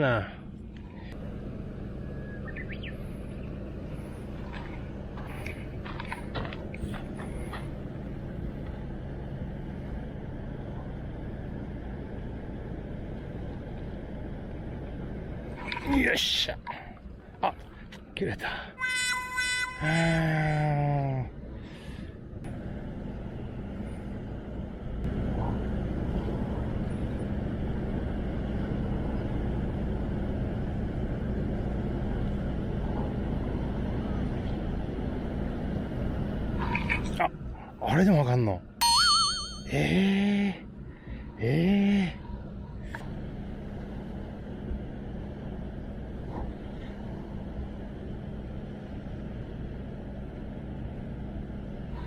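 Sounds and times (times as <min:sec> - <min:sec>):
engine hum and rumble: 0:00.0 - 0:18.6, 0:19.9 - 0:38.0, 0:39.7 - 0:52.0
short high chirps: 0:38.8 - 0:39.7.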